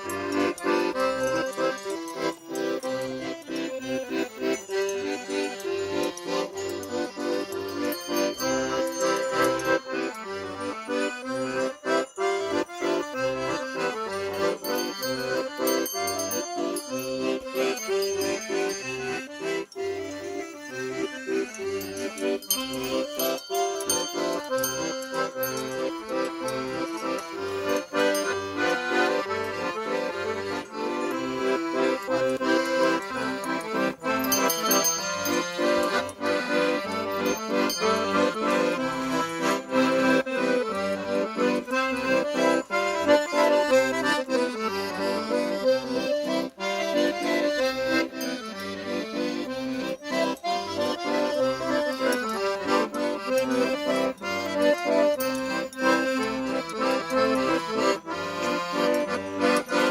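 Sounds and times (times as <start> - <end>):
accordion playing a tune: 0.0 - 59.9.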